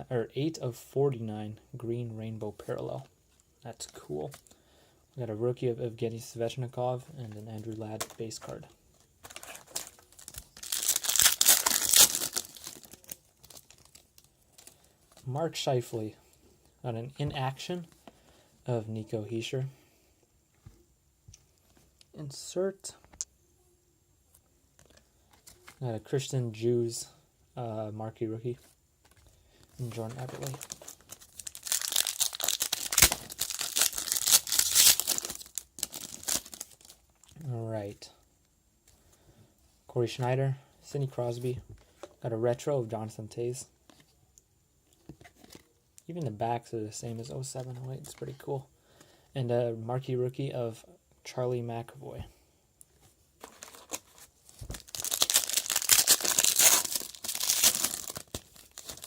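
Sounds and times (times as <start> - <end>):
wrapper crinkling and tearing: 9.2 - 15.3, 29.8 - 37.3, 53.4 - 59.0.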